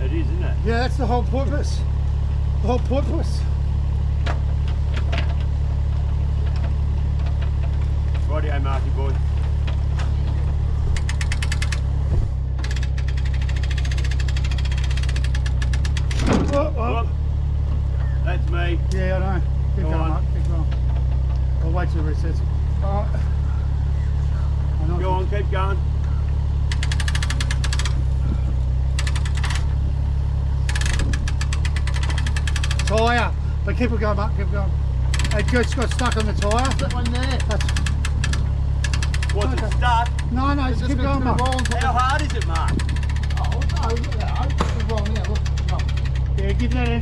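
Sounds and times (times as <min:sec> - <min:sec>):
engine idling: 0:00.0 - 0:47.0
rapid mechanical clicking: 0:09.4 - 0:11.9, 0:12.5 - 0:16.6, 0:26.6 - 0:28.2, 0:28.8 - 0:29.8, 0:30.6 - 0:33.3, 0:35.0 - 0:47.0.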